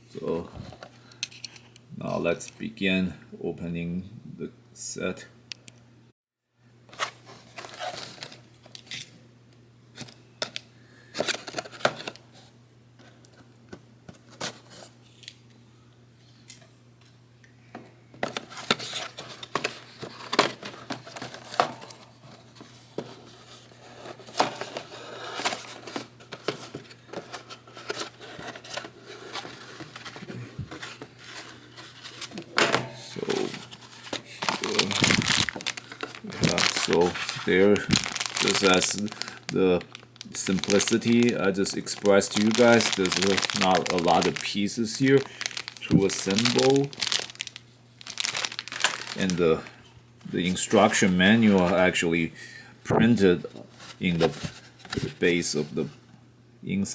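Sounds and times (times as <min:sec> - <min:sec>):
packaging rustling and crinkling: 0:18.2 - 0:51.8.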